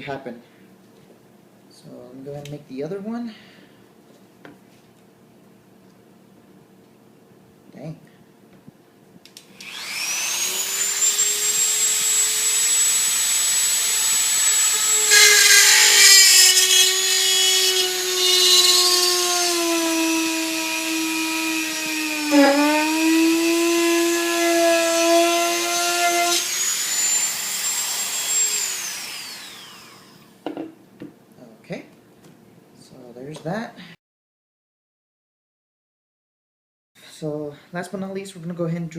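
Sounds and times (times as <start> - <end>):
electric drill boring a hole: 9.6 - 30.3.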